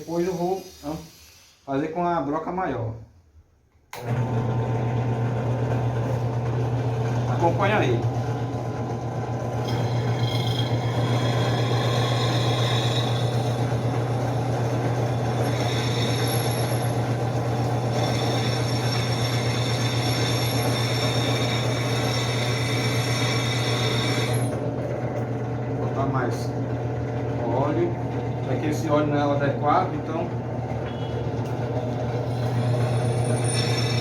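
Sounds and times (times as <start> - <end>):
drill press motor hum: 3.9 - 34.0
drill bit squealing into metal: 9.6 - 24.6, 32.2 - 34.0.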